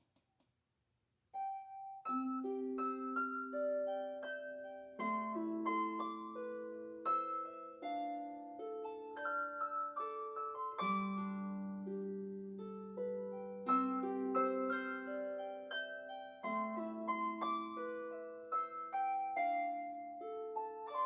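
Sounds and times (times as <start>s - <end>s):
harp playing gentle melody: 1.4s - 21.0s.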